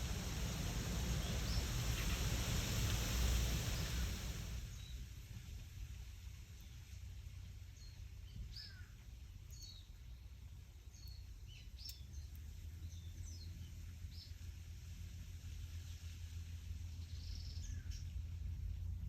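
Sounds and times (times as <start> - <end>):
low rumble of wind: 0.0 - 19.0
small birds chirping: 6.6 - 14.4, 16.9 - 18.2.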